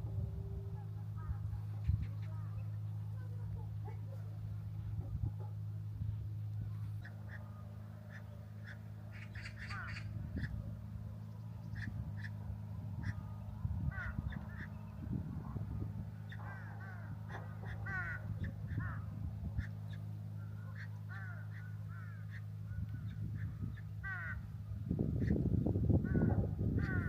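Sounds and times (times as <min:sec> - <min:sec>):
low hum: 0:00.0 - 0:27.0
low rumble: 0:00.0 - 0:27.0
crows cawing: 0:07.0 - 0:10.6, 0:13.0 - 0:14.8, 0:16.2 - 0:24.5, 0:25.2 - 0:27.0.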